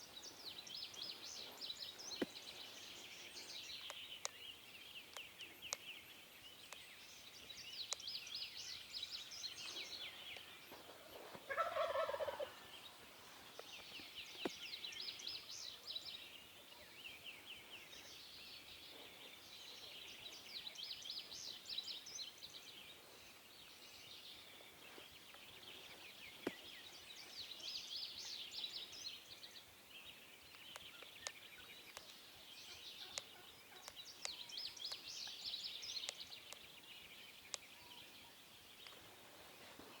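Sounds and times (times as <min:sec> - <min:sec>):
small birds chirping: 0:00.0 - 0:40.0
wild turkey gobbling: 0:11.5 - 0:12.6.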